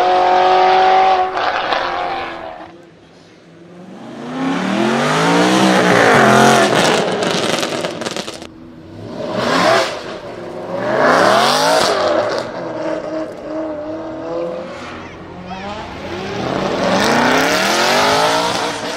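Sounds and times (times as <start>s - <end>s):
exhaust crackles and pops: 6.5s - 8.6s.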